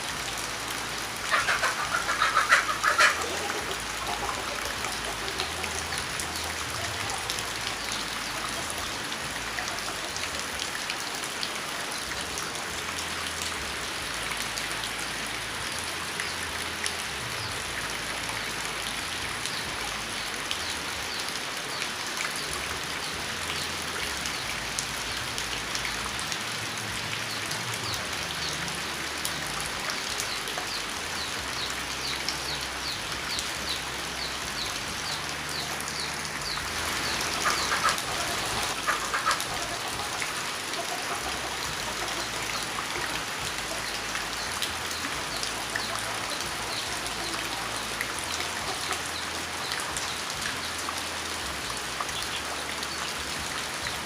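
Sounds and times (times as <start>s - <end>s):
raindrops ticking on a surface: 0.0s - 54.0s
steady rain: 0.0s - 54.0s.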